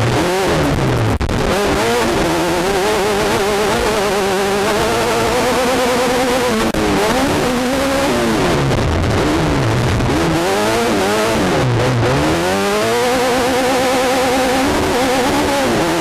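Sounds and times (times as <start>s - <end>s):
race car engine at high revs: 0.0s - 16.0s.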